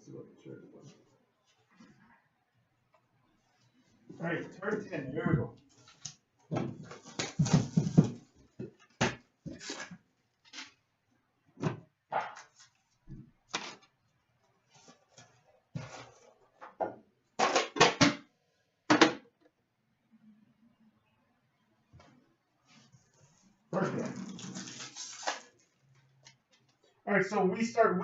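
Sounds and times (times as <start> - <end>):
foil packs rustling: 23.8 - 25.9.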